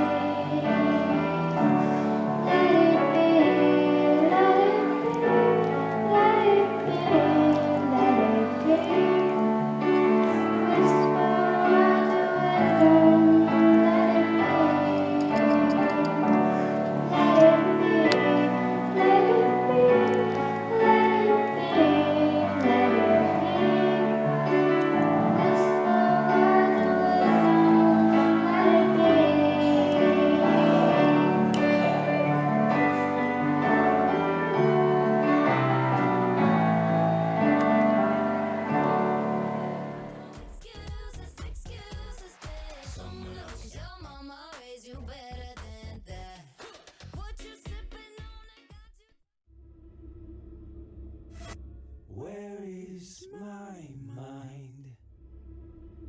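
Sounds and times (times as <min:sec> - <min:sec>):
young person singing: 0:00.0 - 0:34.6, 0:40.1 - 0:49.1
piano accompaniment: 0:00.0 - 0:40.7.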